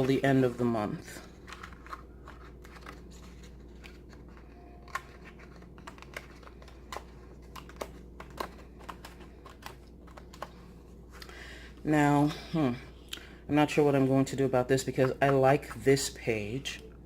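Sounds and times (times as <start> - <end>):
paper rustling: 0.0 - 10.7
faint low hum: 0.0 - 17.0
planner discs clicking: 1.2 - 10.6.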